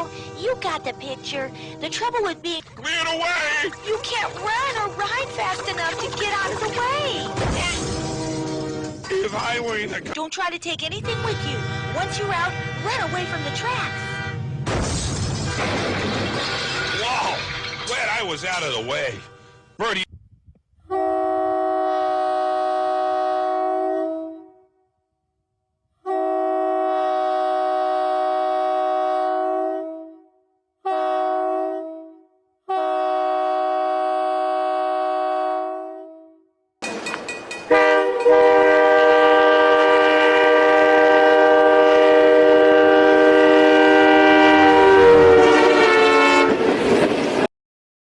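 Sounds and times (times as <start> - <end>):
train horn blasts: 0.0 - 9.1, 11.0 - 14.6, 20.9 - 24.9, 26.0 - 36.5, 37.7 - 46.8.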